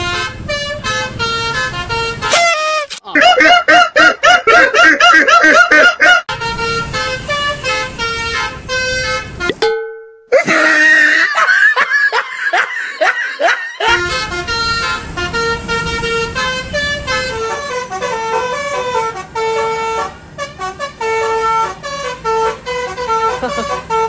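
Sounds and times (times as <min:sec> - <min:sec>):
multi-tone bus horn: 0:00.0 - 0:03.8, 0:06.0 - 0:09.6, 0:13.0 - 0:24.0.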